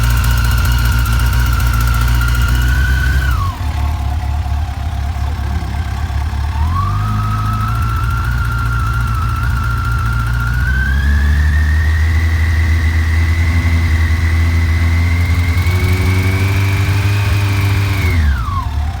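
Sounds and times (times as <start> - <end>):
high-pitched engine whine: 0.0 - 19.0
motorcycle engine running: 0.0 - 19.0.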